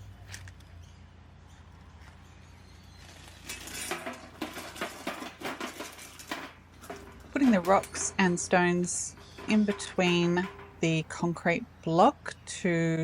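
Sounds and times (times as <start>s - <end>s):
rocks clinking into metal container: 3.0s - 11.6s.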